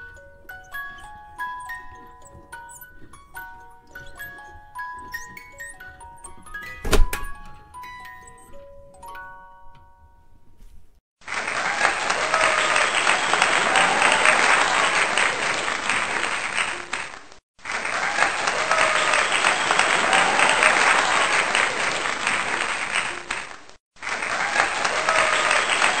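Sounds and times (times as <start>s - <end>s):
crowd applause: 11.2s - 26.0s
faint cheering: 11.3s - 16.7s, 17.6s - 23.0s, 24.1s - 26.0s.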